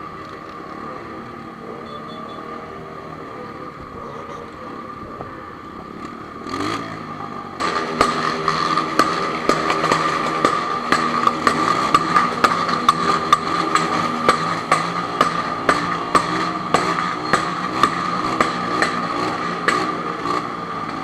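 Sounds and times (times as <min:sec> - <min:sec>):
motorcycle engine running: 0:00.0 - 0:21.0
sharp engine clicks: 0:07.6 - 0:21.0.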